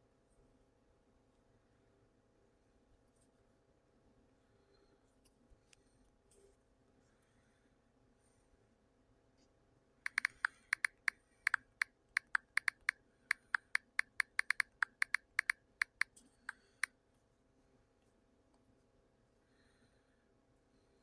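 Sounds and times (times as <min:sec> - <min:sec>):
sharp clicks: 0:10.1 - 0:16.7.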